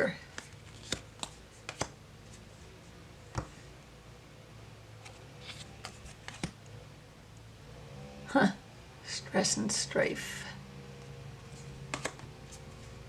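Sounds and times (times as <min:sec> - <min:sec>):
faint room hum: 0:00.0 - 0:13.0
cards clicking and tapping: 0:00.2 - 0:02.0, 0:03.3 - 0:03.6, 0:05.0 - 0:06.6, 0:11.5 - 0:12.9.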